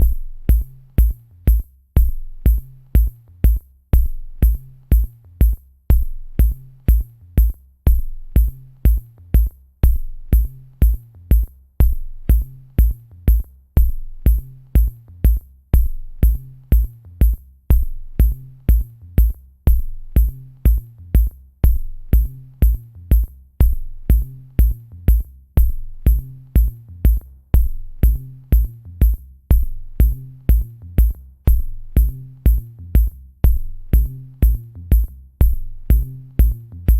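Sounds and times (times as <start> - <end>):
deep kick drum: 0.0 - 36.9
ticking hi-hats: 0.0 - 36.9
repeating low bass line: 5.9 - 36.9.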